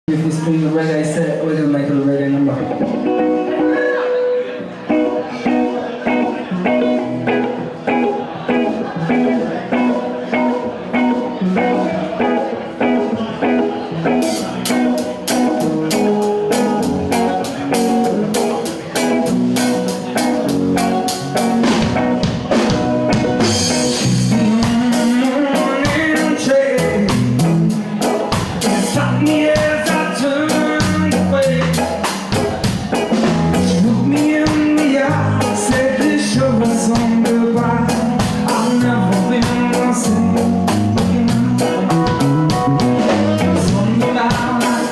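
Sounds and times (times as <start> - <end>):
electric guitar: 1.8 - 44.9
drum kit beat: 4.9 - 44.9
person singing: 23.4 - 44.9.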